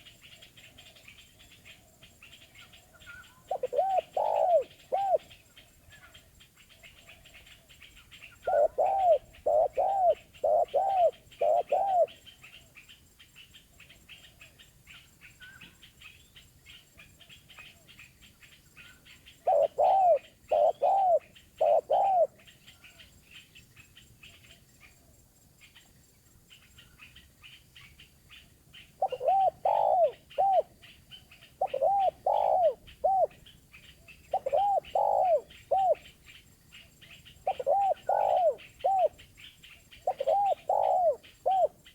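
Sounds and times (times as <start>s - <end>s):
small birds chirping: 0.0s - 41.9s
dove cooing: 2.6s - 5.4s, 8.2s - 12.4s, 18.8s - 23.0s, 29.0s - 36.1s, 37.1s - 41.9s.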